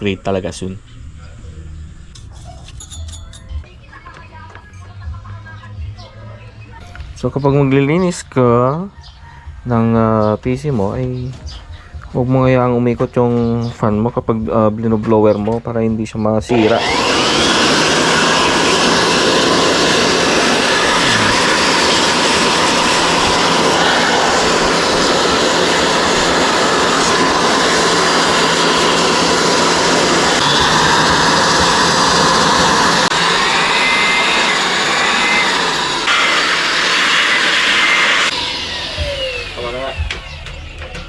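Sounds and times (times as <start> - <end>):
electric air blower running: 16.5 - 40.8.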